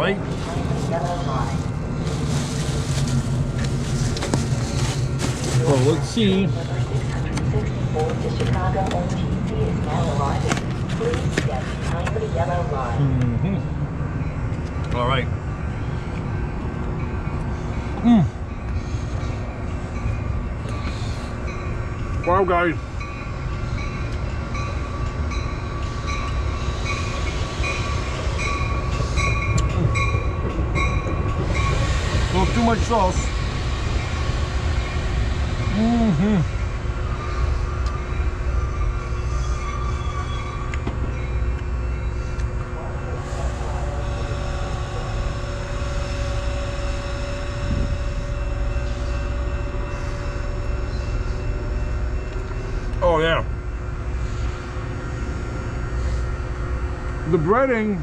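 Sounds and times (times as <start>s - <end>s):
train rumbling past: 0.0s - 58.0s
pulsing high ringing tone: 22.8s - 42.6s, 43.5s - 57.7s.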